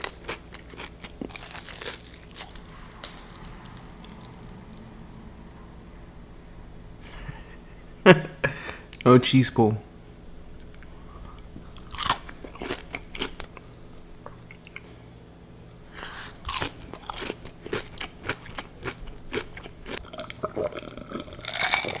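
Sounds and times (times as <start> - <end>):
crunchy bites: 0.0 - 4.6, 11.7 - 13.6, 16.2 - 22.0
crackling chewing: 0.0 - 5.9, 10.1 - 14.9, 15.7 - 22.0.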